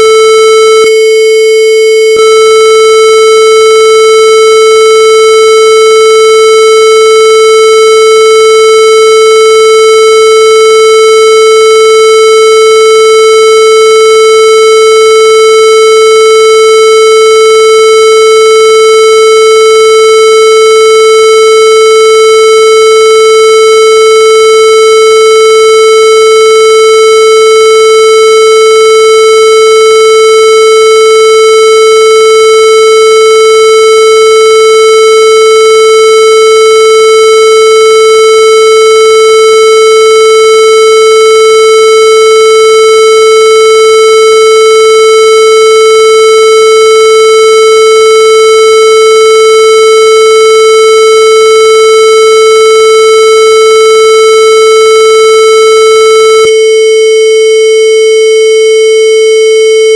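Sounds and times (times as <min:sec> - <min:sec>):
harsh buzzy electronic tone: 0:00.0 - 0:03.1.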